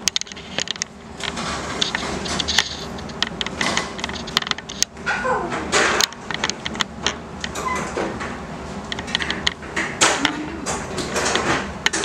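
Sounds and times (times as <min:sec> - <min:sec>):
objects clicking and knocking: 0:00.0 - 0:12.0
faint voices: 0:10.2 - 0:10.9.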